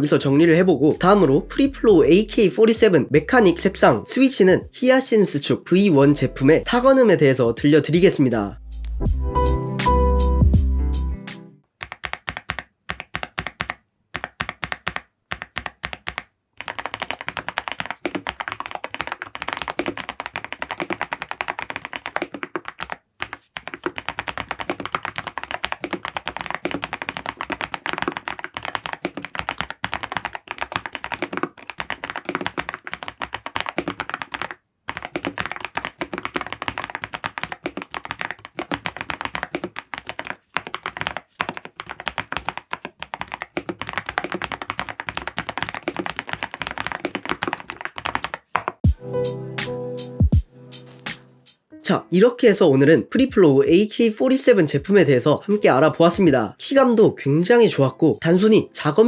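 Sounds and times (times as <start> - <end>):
typing on mechanical keyboard: 11.8 - 48.8.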